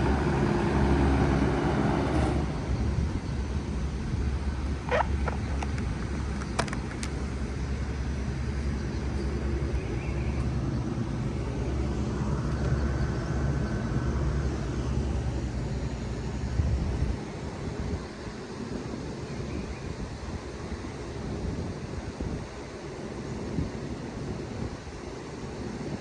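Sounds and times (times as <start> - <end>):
heat pump humming: 0.0 - 19.4.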